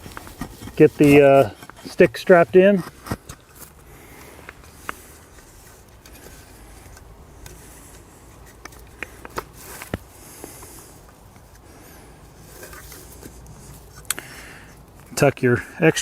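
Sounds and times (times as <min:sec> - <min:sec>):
rope scraping on tree trunk: 0:00.0 - 0:03.8.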